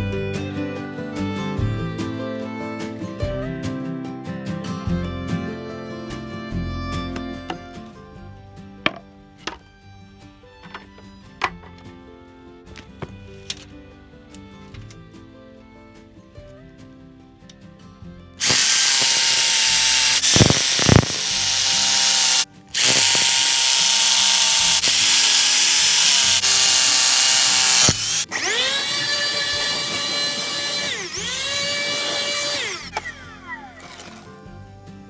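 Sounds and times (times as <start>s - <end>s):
high motor whine: 18.4s - 33.3s
power tool cutting wood: 18.4s - 34.4s.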